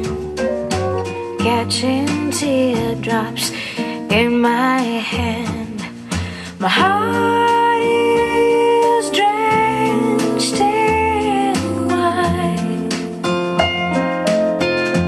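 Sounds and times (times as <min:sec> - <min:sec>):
woman singing: 0:00.0 - 0:13.5
bass and keys: 0:00.0 - 0:15.0
plucked guitar: 0:00.0 - 0:15.0
piano notes: 0:06.6 - 0:15.0.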